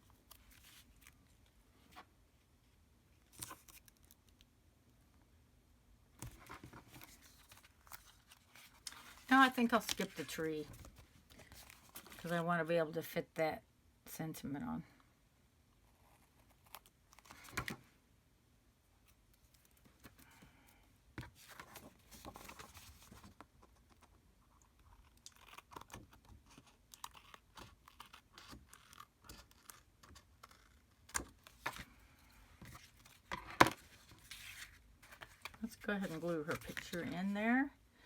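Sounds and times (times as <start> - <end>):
paper rustling: 6.2 - 12.4, 32.6 - 37.4.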